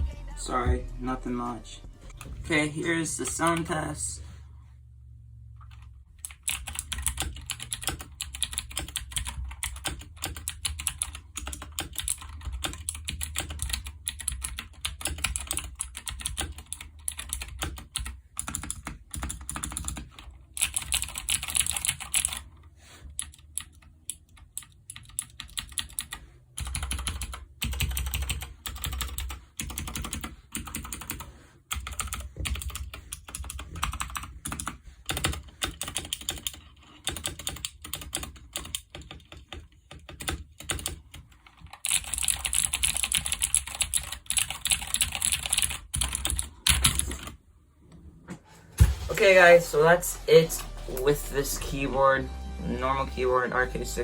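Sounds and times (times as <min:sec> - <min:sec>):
mechanical keyboard typing: 0:05.7 - 0:22.5, 0:23.1 - 0:47.4.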